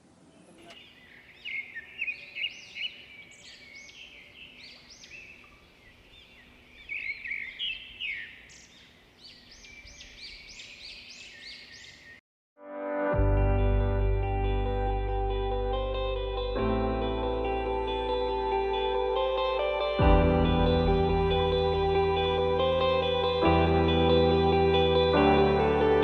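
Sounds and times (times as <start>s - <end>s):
birds chirping and singing: 0.3s - 12.2s.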